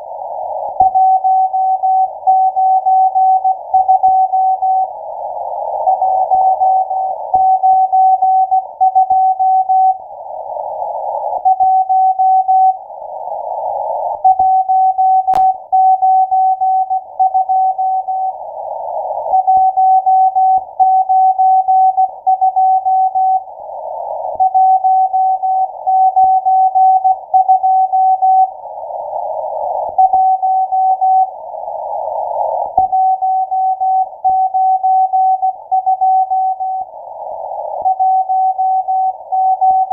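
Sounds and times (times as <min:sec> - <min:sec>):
radio receiver hiss: 0:15.4 - 0:15.6.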